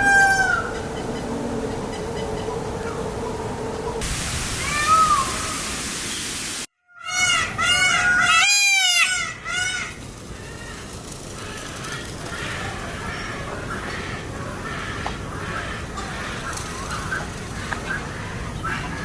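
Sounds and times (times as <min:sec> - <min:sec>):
peacock calling: 0:00.0 - 0:10.7.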